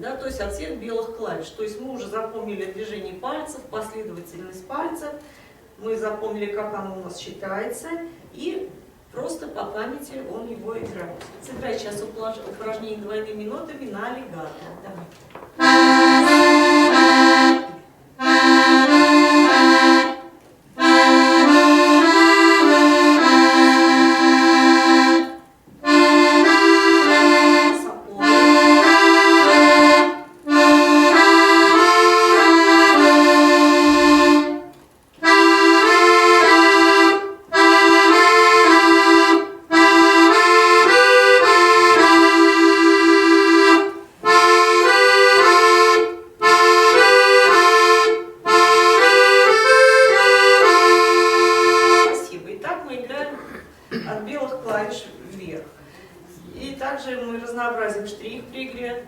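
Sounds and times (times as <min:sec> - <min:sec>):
accordion playing double notes: 0:15.6 - 0:52.3.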